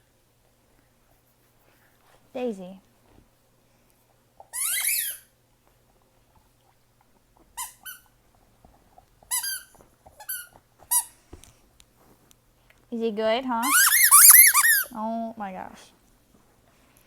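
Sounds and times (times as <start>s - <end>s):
squeaky ball squeaking: 4.5s - 5.3s, 9.3s - 11.1s, 13.6s - 14.9s.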